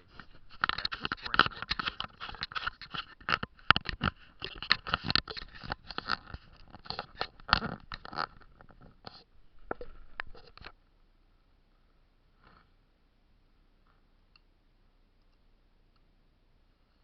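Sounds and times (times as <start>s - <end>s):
crackling and scraping rustle: 0.0s - 10.8s.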